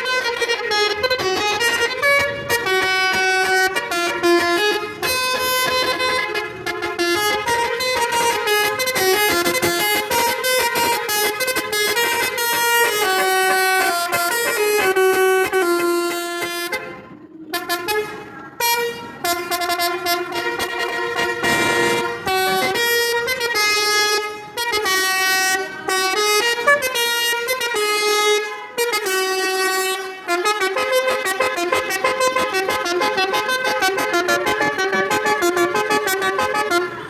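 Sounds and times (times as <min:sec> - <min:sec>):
multi-tone air horn playing a tune: 0:00.0 - 0:37.0
quick repeated horn toots: 0:03.7 - 0:25.7.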